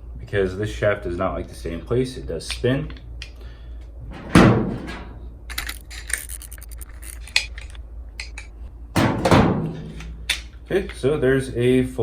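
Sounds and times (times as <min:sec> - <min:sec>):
metal clunk: 0:04.1 - 0:05.7, 0:09.0 - 0:10.5
wrench clicking and scraping: 0:04.9 - 0:07.7.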